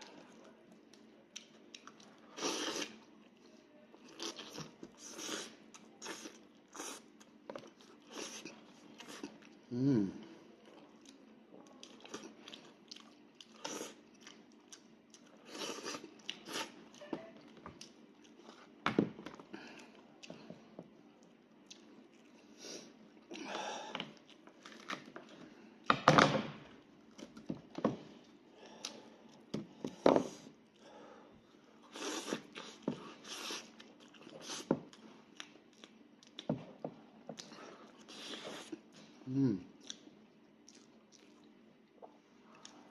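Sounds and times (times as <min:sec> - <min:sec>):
chewing and crunching meat: 0:10.6 - 0:18.8, 0:32.0 - 0:36.5, 0:39.7 - 0:42.9.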